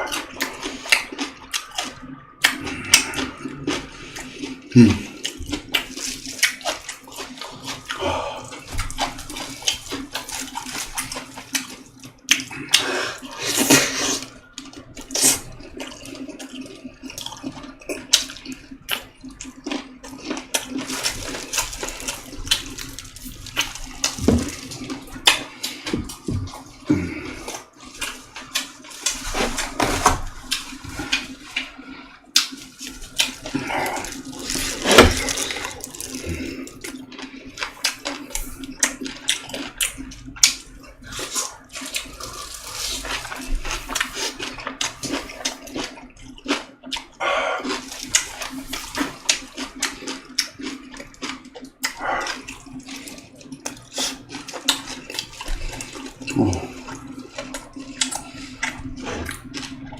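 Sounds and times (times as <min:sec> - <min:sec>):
person slurping and chewing soup: 0:00.0 - 0:59.9.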